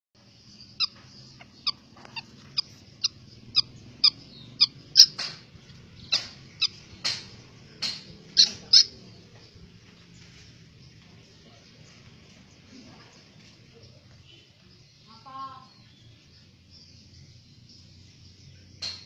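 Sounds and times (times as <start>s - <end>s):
bird giving sharp high calls: 0.7s - 5.4s, 6.0s - 9.2s.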